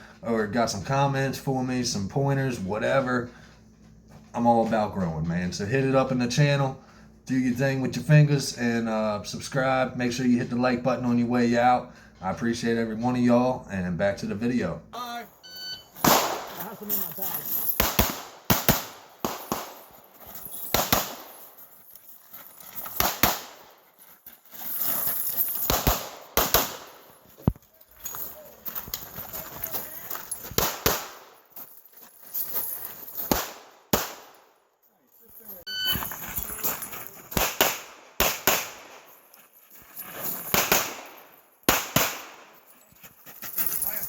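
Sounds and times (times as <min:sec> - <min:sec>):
pistol gunshots: 0:16.0 - 0:16.6, 0:17.8 - 0:20.0, 0:20.7 - 0:21.4, 0:23.0 - 0:23.7, 0:25.7 - 0:27.1, 0:30.6 - 0:31.4, 0:33.3 - 0:34.5, 0:37.3 - 0:39.1, 0:40.5 - 0:42.6.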